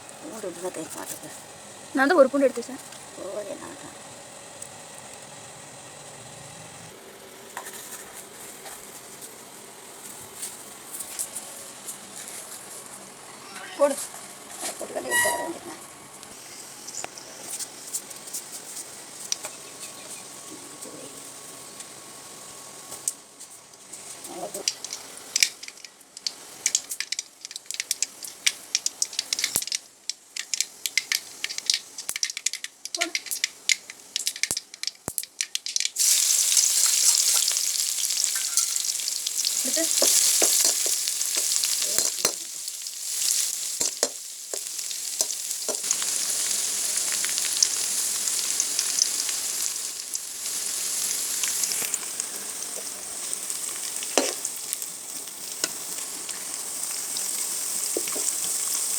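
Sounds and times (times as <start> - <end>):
loud steady sizzle: 0.0 - 58.9
hot oil crackling and popping: 17.0 - 58.9.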